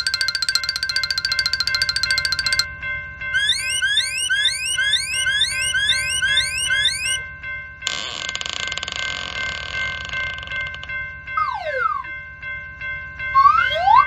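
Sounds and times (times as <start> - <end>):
steady held tones: 0.0 - 2.7, 10.9 - 14.0.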